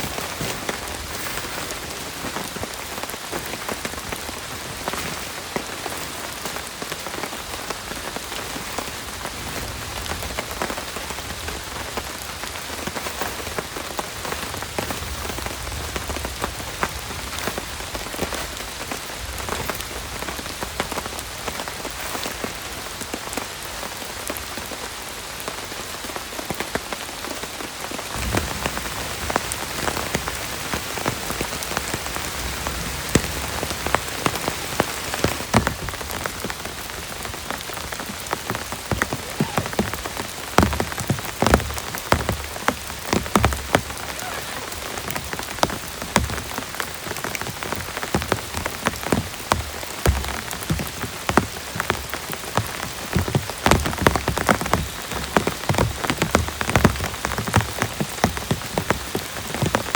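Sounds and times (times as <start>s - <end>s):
heavy rain pouring: 0.0s - 59.9s
low rumble: 28.1s - 33.9s.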